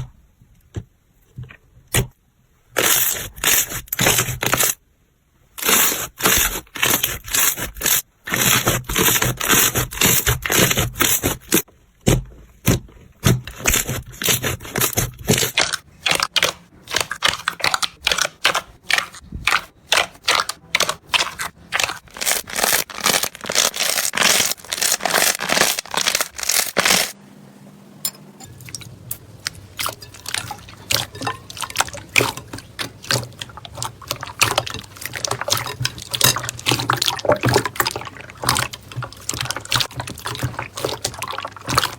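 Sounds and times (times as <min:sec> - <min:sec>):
slime crackling and popping: 0:20.3 - 0:27.2.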